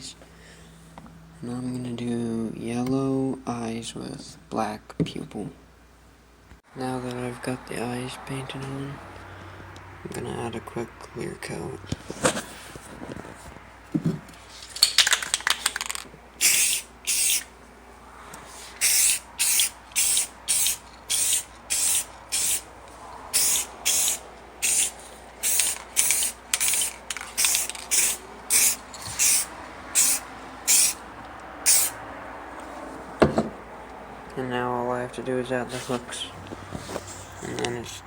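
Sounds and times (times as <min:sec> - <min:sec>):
spray gun hissing bursts: 0:16.4 - 0:17.5, 0:18.6 - 0:22.7, 0:23.3 - 0:31.0, 0:31.6 - 0:32.0.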